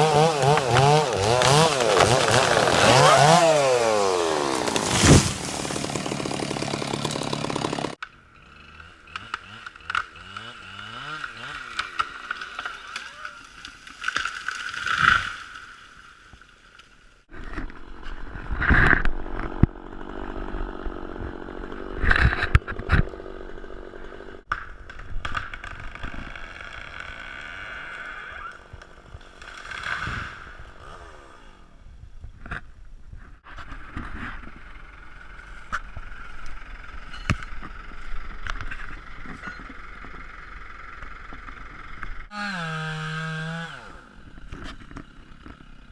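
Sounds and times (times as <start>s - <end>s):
chainsaw engine running: 0.0s - 13.4s, 17.8s - 24.5s, 25.6s - 31.6s, 33.5s - 45.9s
loud knocks and scrapes: 4.5s - 8.0s.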